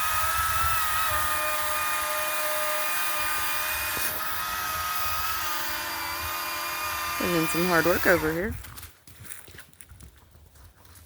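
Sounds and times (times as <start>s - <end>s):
chainsaw engine running: 0.0s - 8.6s.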